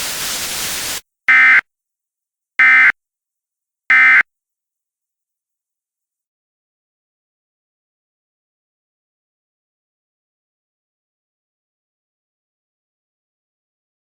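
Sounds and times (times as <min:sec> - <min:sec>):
steady hiss: 0:00.0 - 0:01.0.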